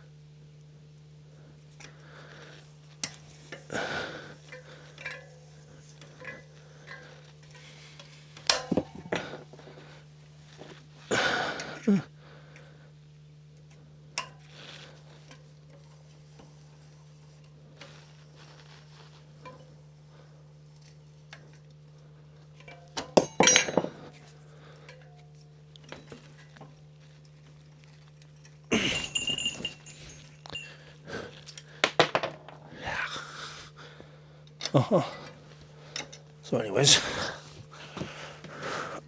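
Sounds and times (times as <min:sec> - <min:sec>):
steady low hum: 0:00.0 - 0:39.0
metal tools clinking: 0:22.6 - 0:32.6.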